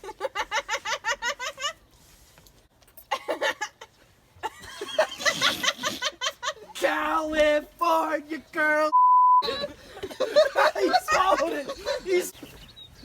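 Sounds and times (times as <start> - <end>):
high-pitched giggling laughter: 0.0 - 1.8, 3.1 - 6.8, 9.4 - 12.3.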